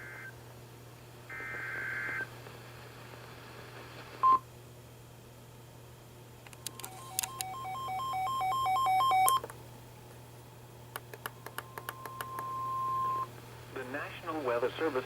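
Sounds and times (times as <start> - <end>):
steady warning tone: 6.8 - 9.4, 11.6 - 13.3
two-tone alarm beep: 6.8 - 9.4, 11.8 - 13.3
clicks: 10.9 - 12.5.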